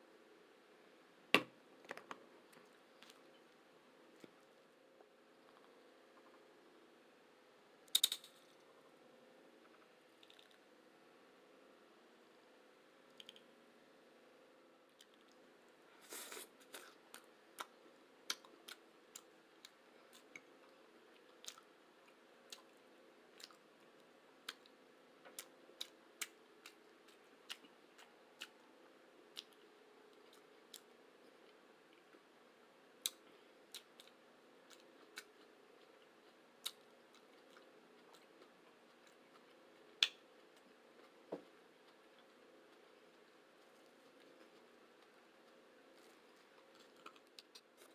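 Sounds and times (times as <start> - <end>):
person chewing food: 16.0 - 32.3, 33.0 - 47.9.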